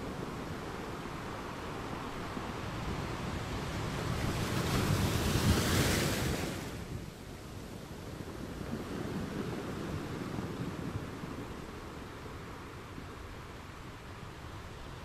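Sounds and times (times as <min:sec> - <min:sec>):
ocean waves crashing: 0:00.0 - 0:06.9
steady wash of surf: 0:00.0 - 0:15.0.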